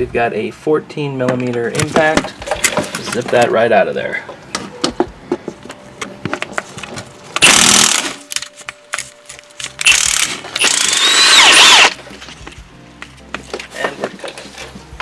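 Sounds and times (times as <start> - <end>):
impact wrench whining: 7.4 - 8.2, 9.8 - 12.0.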